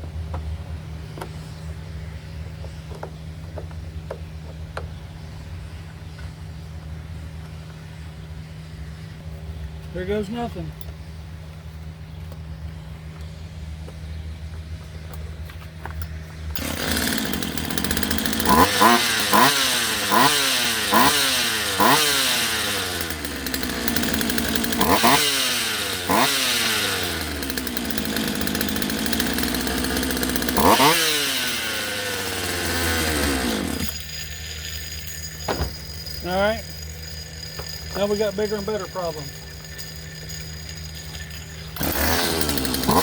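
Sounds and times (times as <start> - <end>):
chainsaw engine revving: 16.0 - 43.0.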